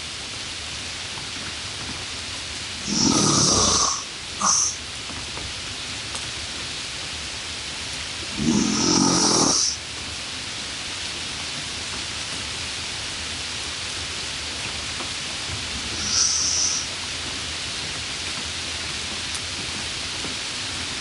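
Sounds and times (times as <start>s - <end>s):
steady hiss: 0.0s - 21.0s
low rasping breath-like sound: 15.9s - 16.9s.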